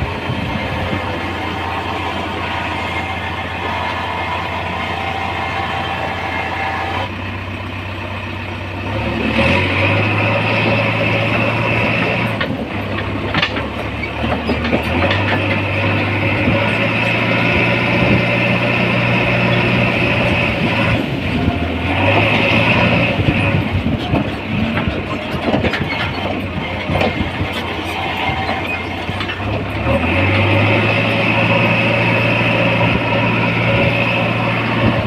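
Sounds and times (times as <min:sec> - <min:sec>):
diesel engine running: 0:00.0 - 0:35.0
metal knocks and clanks: 0:23.5 - 0:29.8.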